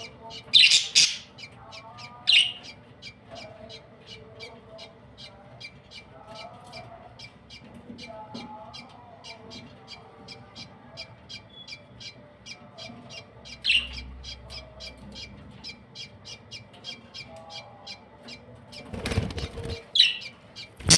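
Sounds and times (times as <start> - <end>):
budgerigars chirping: 0.0 - 8.2, 9.2 - 20.9
budgerigar squawk: 0.6 - 1.3.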